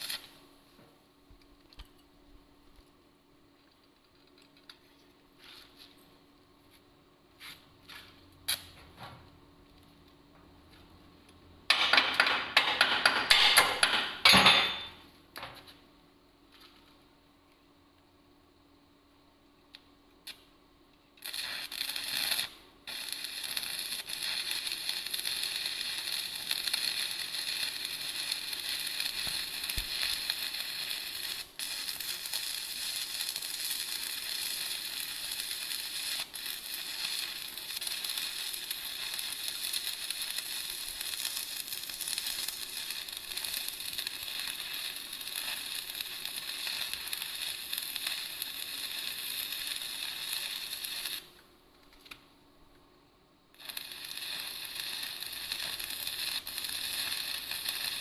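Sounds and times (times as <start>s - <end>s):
welding arc crackling: 0.0s - 0.4s, 21.2s - 51.4s, 53.5s - 58.0s.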